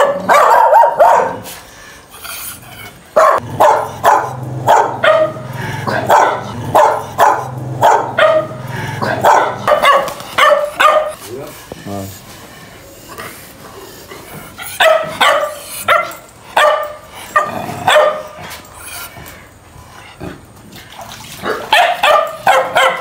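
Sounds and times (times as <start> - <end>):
dog barking loudly: 0.0 - 1.6, 3.1 - 11.2, 14.6 - 18.4, 21.4 - 23.0.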